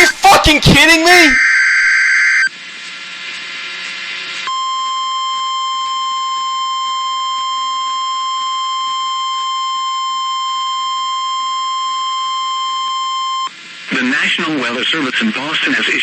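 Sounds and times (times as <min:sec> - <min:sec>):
data burst: 0:00.0 - 0:02.5
radio hiss: 0:00.0 - 0:04.5, 0:13.7 - 0:16.0
steady alarm tone: 0:01.2 - 0:02.5.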